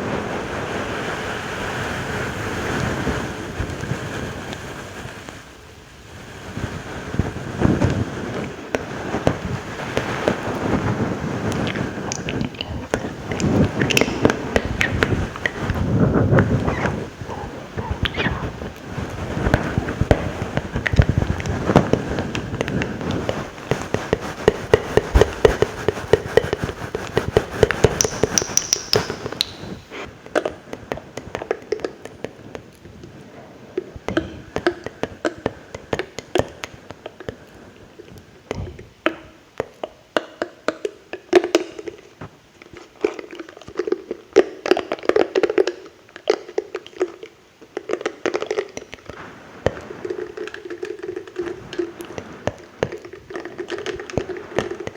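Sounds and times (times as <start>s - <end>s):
wet mouth clicks and smacks: 11.6s - 15.9s, 23.6s - 29.8s.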